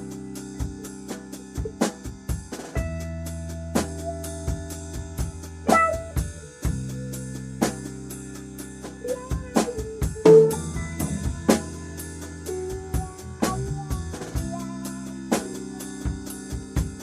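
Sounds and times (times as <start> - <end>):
drum beat: 0.0 - 3.1, 3.8 - 17.0
sustained low chords: 2.8 - 15.8.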